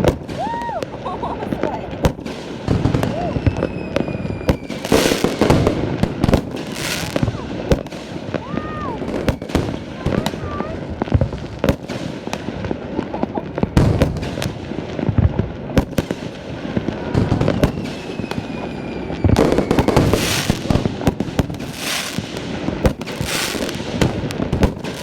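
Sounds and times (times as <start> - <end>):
falling firework whistle: 0.0 - 1.0, 2.6 - 5.7, 8.3 - 9.8, 17.0 - 20.8
firework hissing: 0.0 - 10.8, 16.6 - 25.0
fireworks bangs: 0.0 - 25.0.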